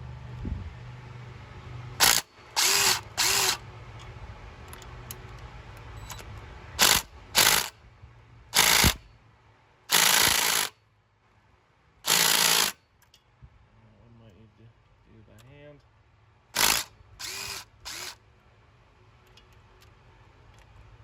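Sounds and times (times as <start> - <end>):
power ratchet spinning bolts: 2.0 - 3.6, 6.8 - 7.7, 8.6 - 9.0, 9.9 - 10.7, 12.1 - 13.2, 16.6 - 18.2.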